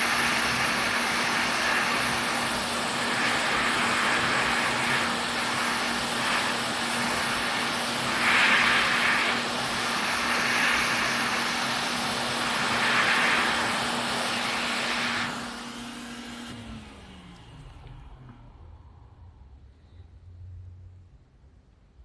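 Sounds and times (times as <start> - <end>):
rush of hot air: 0.0 - 16.6.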